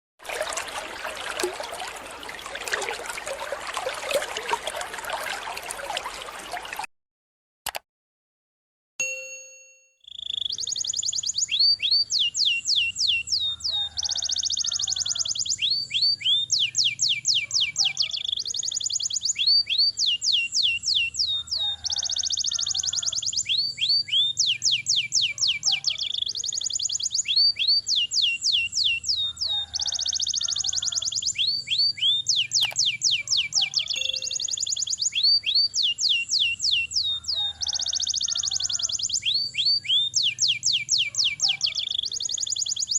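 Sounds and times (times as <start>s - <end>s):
brief tone: 9.0s - 10.0s, 34.0s - 34.5s
canary singing trills: 10.0s - 42.9s.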